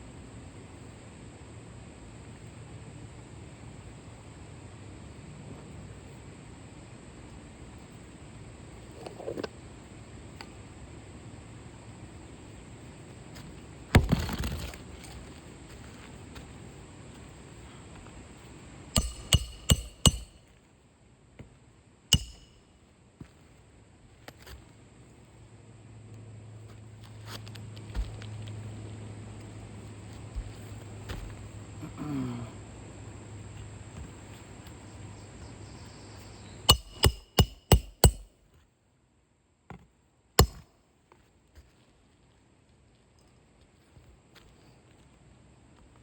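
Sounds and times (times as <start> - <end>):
hammer striking nails: 19.0 - 20.4, 22.1 - 22.6, 36.7 - 38.3, 40.4 - 40.6
light hammer taps: 19.0 - 20.4, 22.1 - 22.6.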